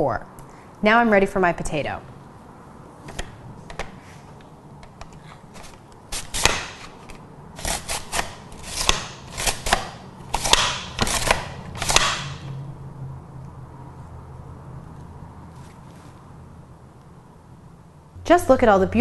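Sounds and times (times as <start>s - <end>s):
mandoline slicing potato: 7.6s - 12.4s.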